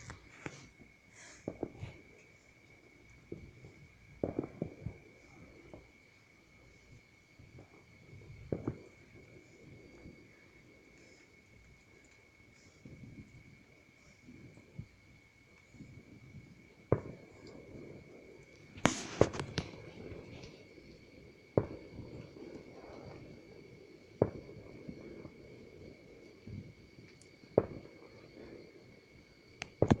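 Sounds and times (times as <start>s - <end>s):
fireworks bangs: 0.0s - 2.1s, 3.2s - 5.9s, 7.5s - 9.2s, 16.4s - 20.7s, 21.5s - 23.3s, 27.6s - 28.6s, 29.6s - 30.0s
fireworks popping: 0.0s - 5.9s, 6.6s - 13.4s, 15.6s - 23.4s, 24.2s - 25.4s, 26.5s - 28.6s, 29.6s - 30.0s.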